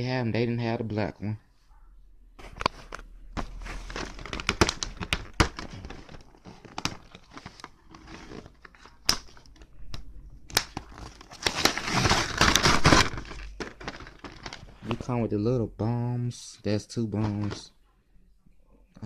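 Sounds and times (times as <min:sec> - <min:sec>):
plastic packaging crinkling and tearing: 0:02.9 - 0:15.1.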